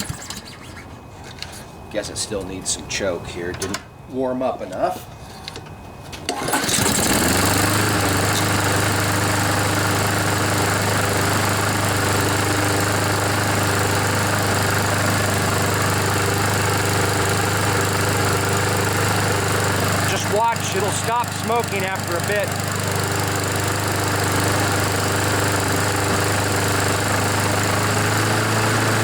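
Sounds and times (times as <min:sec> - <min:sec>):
lawn mower engine starting and running: 0:06.2 - 0:29.0.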